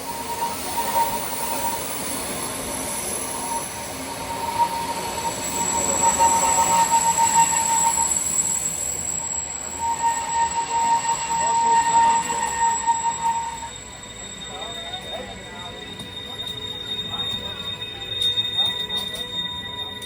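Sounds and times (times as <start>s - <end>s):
train running on rails: 0.0s - 20.0s
train wheels squealing: 0.0s - 20.0s.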